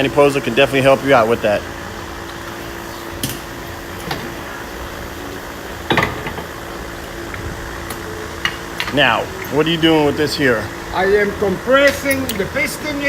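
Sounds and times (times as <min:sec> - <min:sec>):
repair shop hum: 0:00.0 - 0:13.0
tools clicking and clinking: 0:11.8 - 0:12.6.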